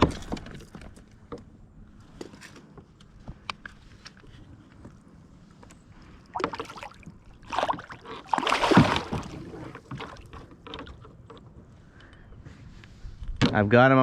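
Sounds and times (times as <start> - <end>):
water splashing: 6.2 - 10.5.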